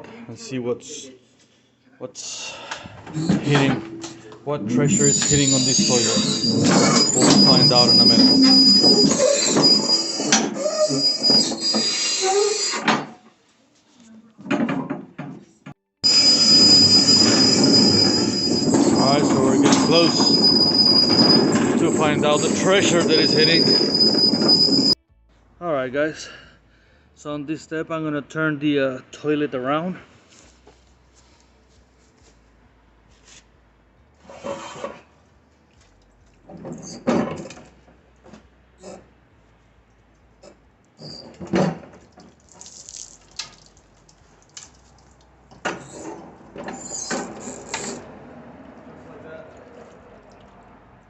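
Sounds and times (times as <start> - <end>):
porcelain toilet scraping: 3.1 - 12.9, 16.0 - 25.0
hand cart wheels rattling and squealing: 3.2 - 12.9, 16.0 - 25.0, 36.5 - 37.8, 40.4 - 41.8, 45.7 - 48.1.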